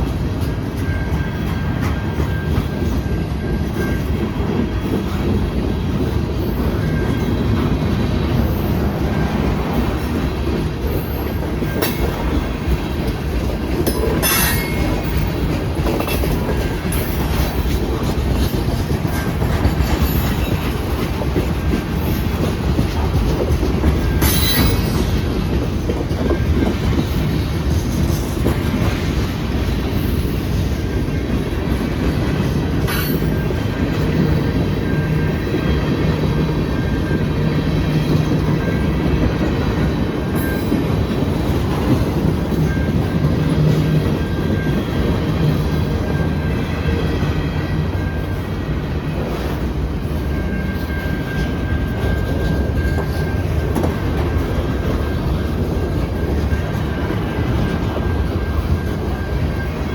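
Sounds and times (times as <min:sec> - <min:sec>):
freight train wheels rumbling: 0:00.0 - 0:59.9
sharp clanks: 0:13.8 - 0:15.3.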